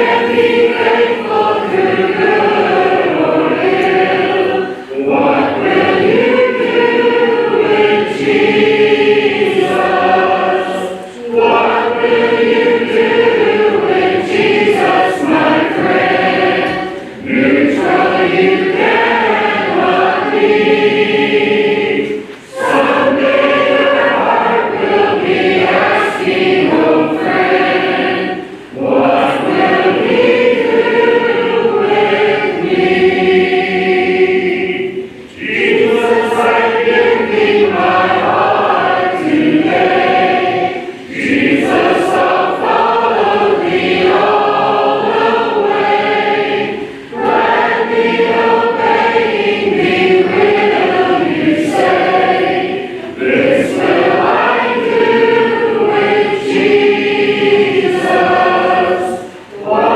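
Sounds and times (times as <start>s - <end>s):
congregation singing a hymn: 0.0s - 59.9s.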